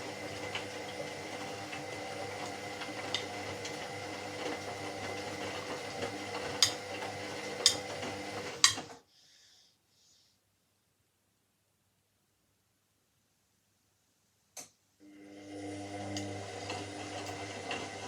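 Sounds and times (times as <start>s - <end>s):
washing machine running: 0.0s - 9.0s, 15.0s - 18.0s.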